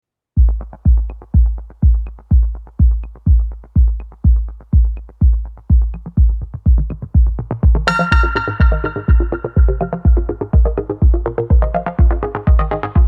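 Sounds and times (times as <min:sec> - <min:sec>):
electronic dance music kick drum: 0:00.4 - 0:13.0
light ticking percussion: 0:00.4 - 0:13.0
synth part: 0:07.9 - 0:11.1.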